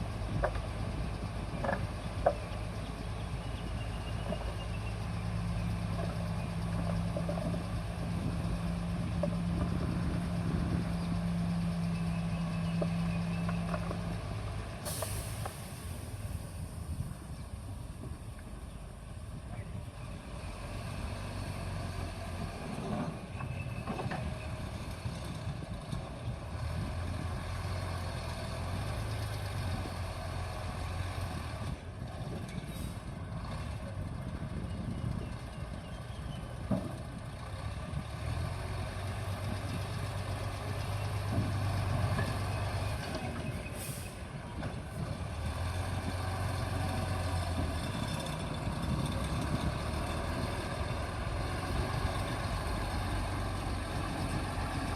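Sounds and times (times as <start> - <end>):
bulldozer diesel engine under load: 0.0 - 54.9.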